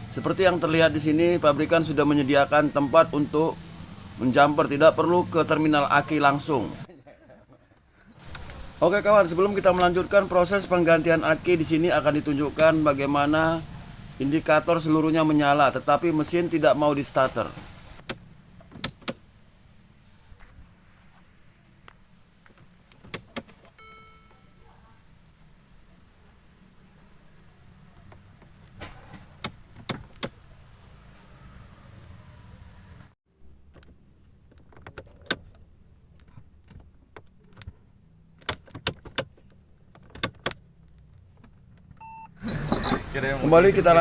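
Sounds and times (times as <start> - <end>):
ignition switch clicking: 18.0 - 19.2
high-pitched tone: 23.8 - 24.6.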